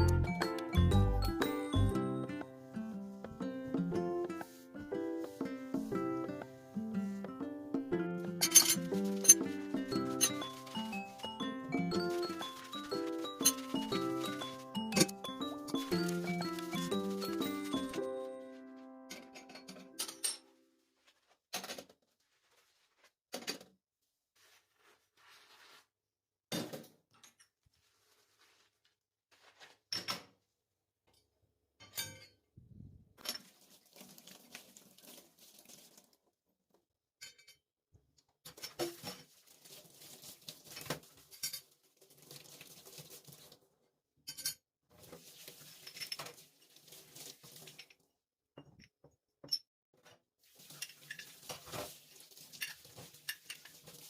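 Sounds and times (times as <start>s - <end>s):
dishes and cutlery clinking: 8.2s - 18.0s, 19.1s - 20.6s, 52.6s - 53.9s.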